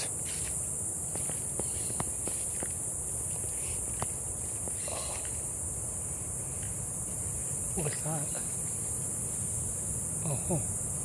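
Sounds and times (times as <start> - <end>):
insects droning: 0.0 - 11.0
footsteps on a trail: 0.2 - 5.5.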